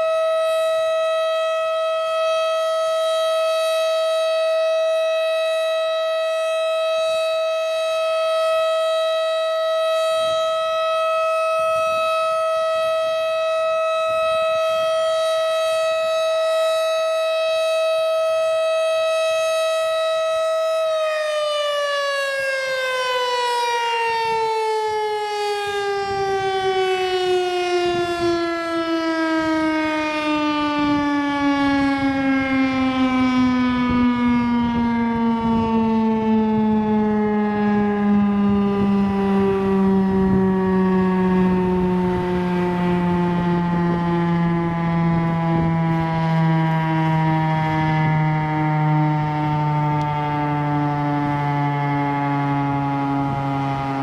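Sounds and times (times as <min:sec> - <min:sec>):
warning siren steady tone: 0:00.0 - 0:54.0.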